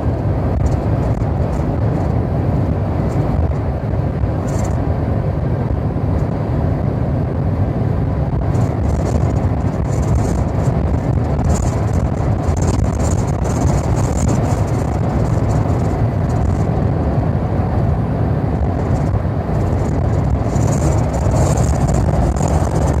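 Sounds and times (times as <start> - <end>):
car rumbling on the move: 0.0 - 23.0.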